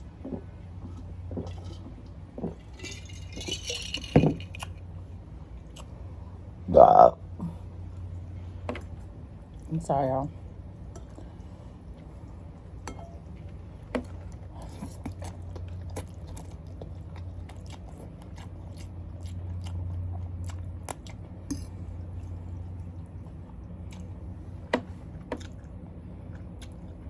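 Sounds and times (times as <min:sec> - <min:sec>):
person chewing food: 0:14.0 - 0:24.4, 0:25.2 - 0:27.0.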